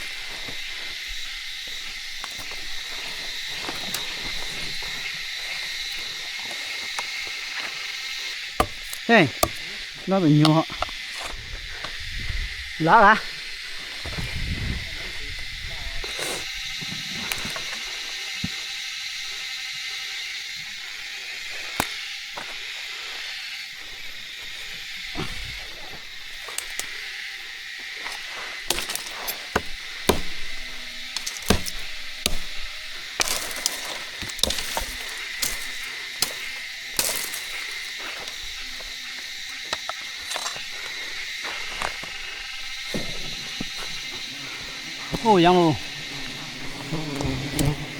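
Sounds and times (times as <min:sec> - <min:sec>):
sharp snaps and crackles: 0:00.0 - 0:12.0, 0:23.8 - 0:47.9
insects droning: 0:00.0 - 0:47.9.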